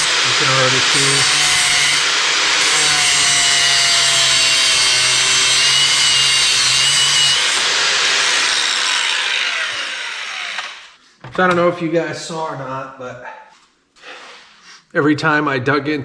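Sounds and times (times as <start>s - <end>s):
power cutting tool whining: 0.0s - 11.0s.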